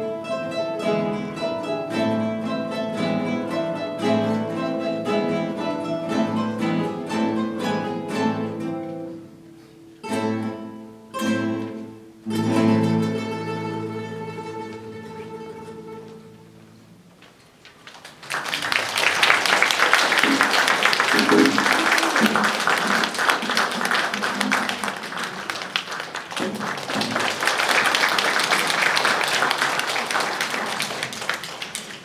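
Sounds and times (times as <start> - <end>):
audience applauding: 17.7 - 32.0.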